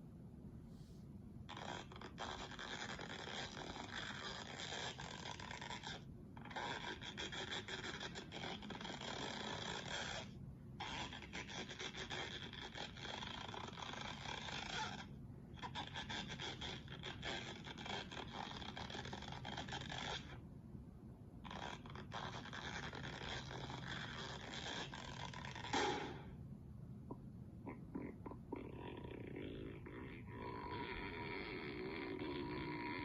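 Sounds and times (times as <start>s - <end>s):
cartoon stretching scrape and creak: 21.5s - 26.3s.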